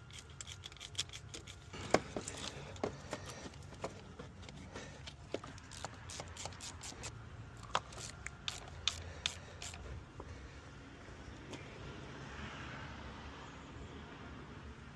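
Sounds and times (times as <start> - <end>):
tools clicking and tapping: 0.0 - 9.8.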